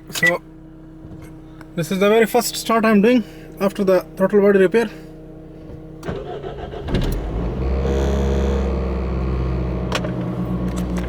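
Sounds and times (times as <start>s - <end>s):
car engine cranking and idling: 0.0s - 11.0s.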